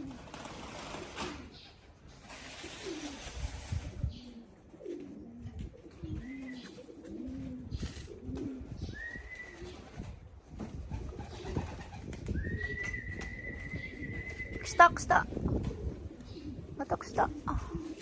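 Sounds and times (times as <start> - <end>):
pigeons cooing: 0.0 - 18.0.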